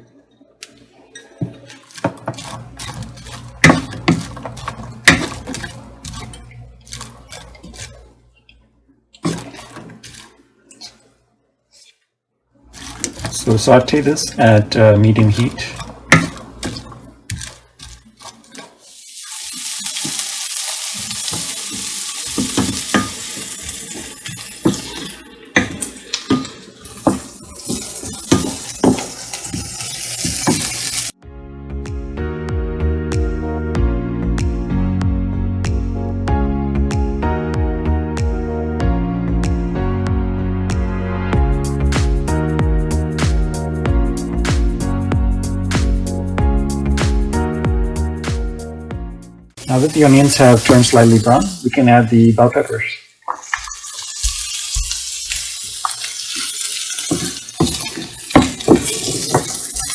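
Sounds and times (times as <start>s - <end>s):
utensil stirring in frying pan: 1.4s - 12.0s, 12.6s - 31.2s, 49.6s - 59.9s
onions sizzling in oil: 2.0s - 8.0s, 12.7s - 31.2s, 49.6s - 52.2s, 53.3s - 59.9s.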